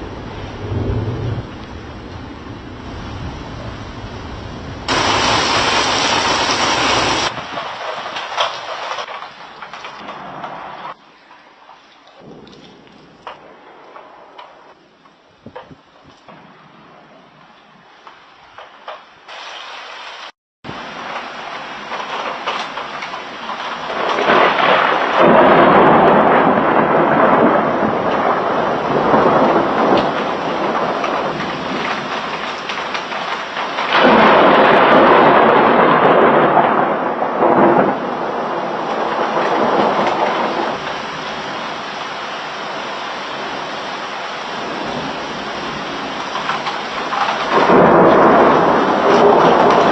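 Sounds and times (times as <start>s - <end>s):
rolls of thunder: 0.0s - 9.2s, 12.2s - 14.8s, 21.9s - 41.7s, 44.5s - 49.9s
steady rain: 0.0s - 49.9s.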